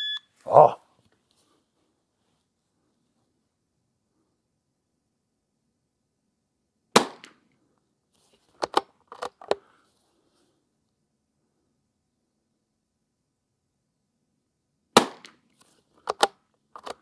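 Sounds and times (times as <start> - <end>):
rifle shot: 7.0 - 7.3, 15.0 - 15.3
rifle bolt metallic clicks: 16.0 - 17.0.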